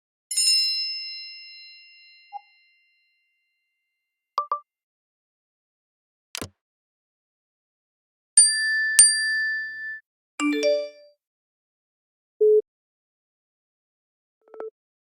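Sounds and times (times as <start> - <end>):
bell-like dings: 0.3 - 3.8, 8.4 - 11.1.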